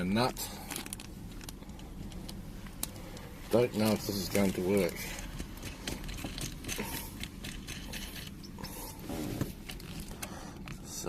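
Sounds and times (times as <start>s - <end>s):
bolt and nut clicking and scraping: 4.4s - 8.8s.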